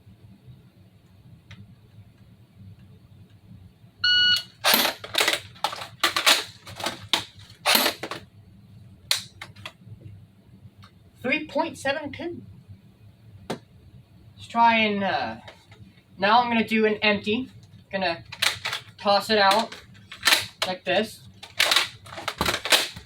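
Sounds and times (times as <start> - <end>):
shot timer beep: 4.0 - 4.5
airsoft gun plastic clacks: 4.6 - 8.2, 18.3 - 20.8, 21.4 - 23.0.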